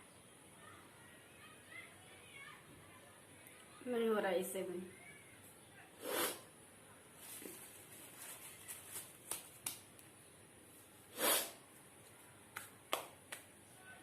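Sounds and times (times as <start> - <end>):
woman sniffing sharply: 6.0 - 6.5, 11.1 - 11.6.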